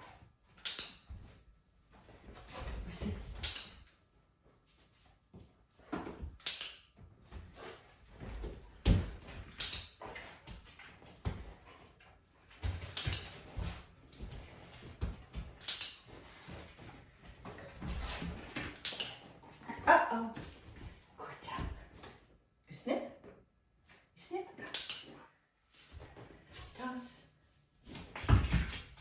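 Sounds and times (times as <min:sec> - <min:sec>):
dog tag jingling: 0:03.4 - 0:03.9, 0:09.6 - 0:10.0, 0:15.7 - 0:16.2, 0:18.8 - 0:19.4.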